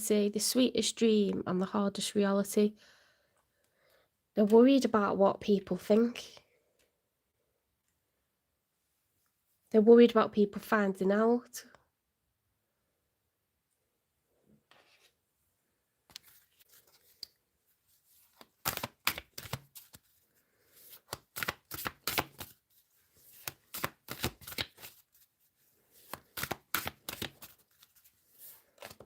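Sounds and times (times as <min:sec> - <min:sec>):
cards shuffled slapping and rustling: 0:16.1 - 0:29.0.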